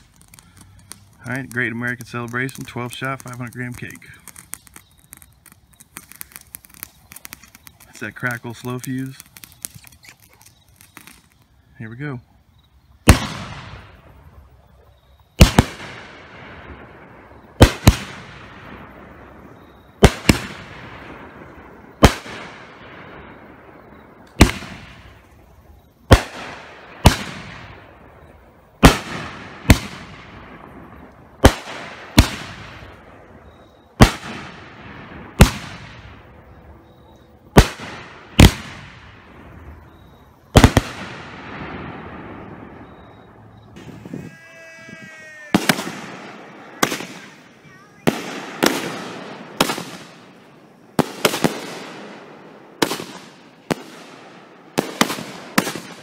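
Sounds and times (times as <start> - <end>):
firework bangs: 0.0 - 11.4, 13.0 - 36.9, 37.5 - 56.0.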